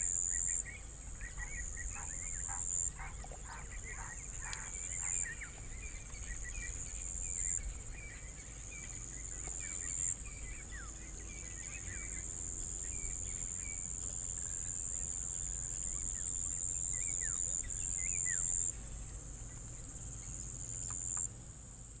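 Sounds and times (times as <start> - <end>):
bird chirping: 0.1 - 12.2.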